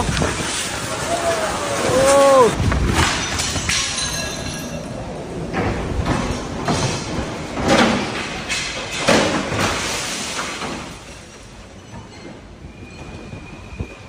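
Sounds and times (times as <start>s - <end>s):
storm noise: 0.0s - 11.6s
loud bangs and rattles: 2.6s - 11.3s.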